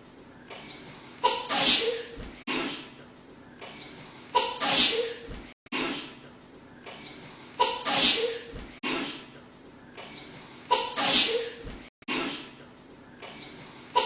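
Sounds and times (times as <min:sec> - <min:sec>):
woman sneezing: 0:01.2 - 0:03.0, 0:04.4 - 0:06.2, 0:07.6 - 0:09.3, 0:10.7 - 0:12.6.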